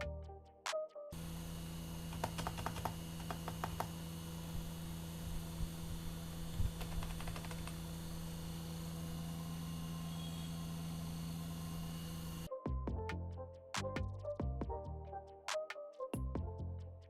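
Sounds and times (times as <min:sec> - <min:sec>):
electrical hum: 0:01.1 - 0:12.5
keyboard key clicks: 0:02.2 - 0:03.9, 0:06.8 - 0:07.8.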